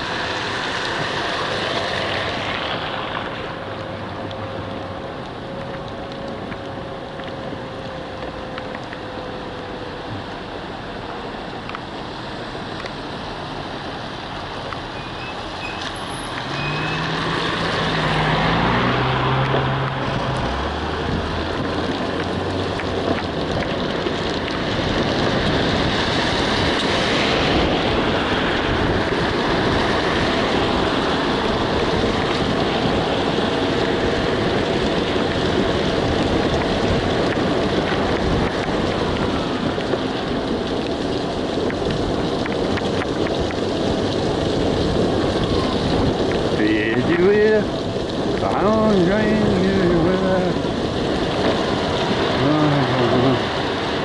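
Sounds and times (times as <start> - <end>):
car road and engine noise: 0.0 - 54.0.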